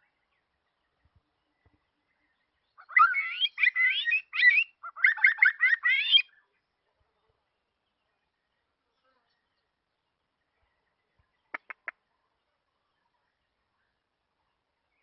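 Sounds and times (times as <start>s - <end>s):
songbird warbling: 2.2s - 6.4s, 11.4s - 12.1s.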